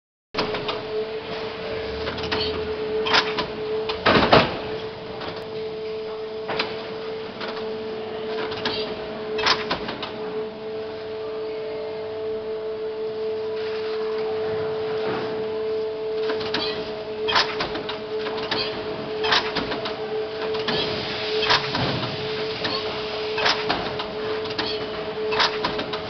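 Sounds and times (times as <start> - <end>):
machine humming: 0.4 - 26.0.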